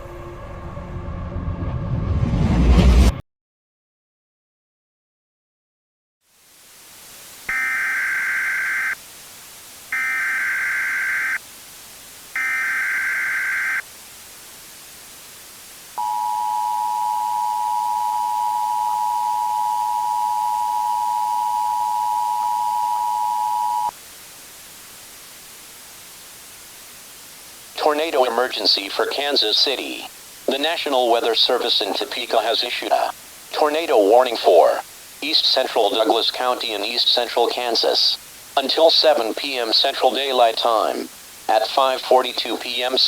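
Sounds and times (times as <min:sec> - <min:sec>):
steady hiss: 0:06.3 - 0:22.0, 0:23.5 - 0:43.0
digital header bursts: 0:07.5 - 0:09.0, 0:09.9 - 0:11.4, 0:12.4 - 0:13.8
two-tone attention signal: 0:07.5 - 0:09.0, 0:09.9 - 0:11.4, 0:12.4 - 0:13.8, 0:16.0 - 0:23.9.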